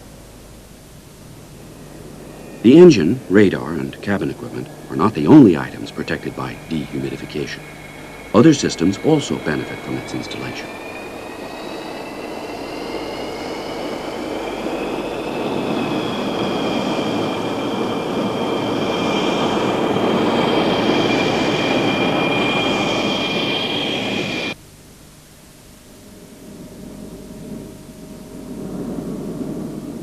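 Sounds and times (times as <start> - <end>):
jet engine roaring and whining: 0.9 - 24.6.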